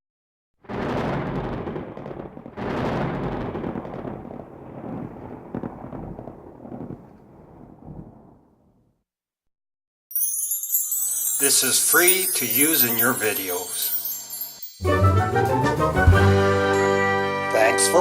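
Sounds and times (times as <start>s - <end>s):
thunder cracking and rumbling: 0.6s - 9.0s, 15.5s - 16.8s.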